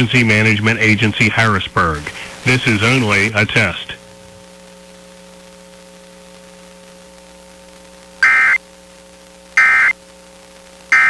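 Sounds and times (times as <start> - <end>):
radio static hum: 0.0 - 4.8, 8.2 - 8.6, 9.6 - 10.0
warbling digital data tones: 8.2 - 8.6, 9.6 - 9.9.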